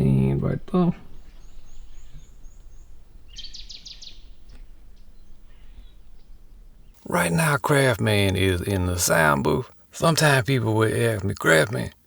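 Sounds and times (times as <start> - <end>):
low steady background noise: 0.0 - 12.0
small bird chirping: 0.8 - 7.0.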